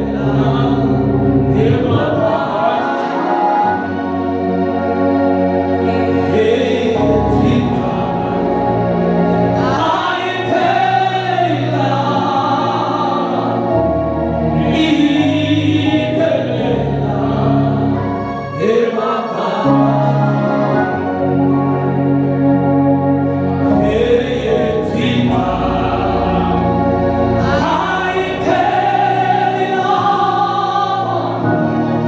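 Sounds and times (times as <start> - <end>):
bass line: 0.0 - 2.8, 19.7 - 32.0
congregation singing gospel: 0.0 - 32.0
keyboard chords: 0.0 - 32.0.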